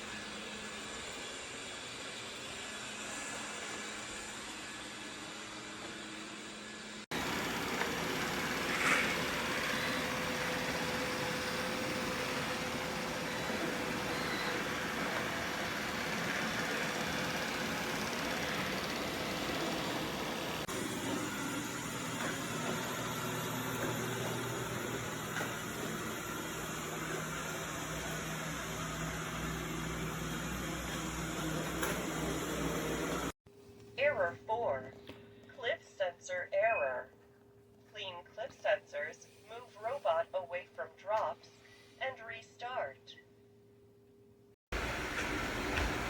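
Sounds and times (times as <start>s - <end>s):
robot vacuum whirring: 6.7s - 33.3s.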